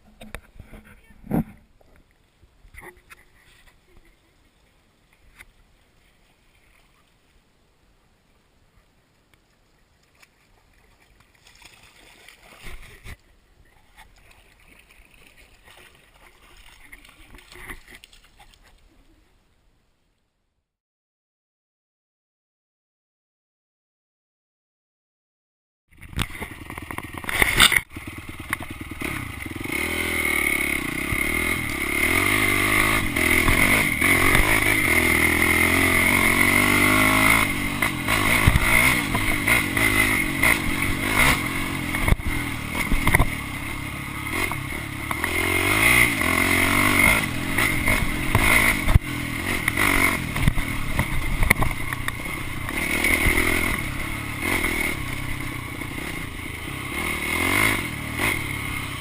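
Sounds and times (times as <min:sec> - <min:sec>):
dirt bike engine revving: 0:26.2 - 0:59.0.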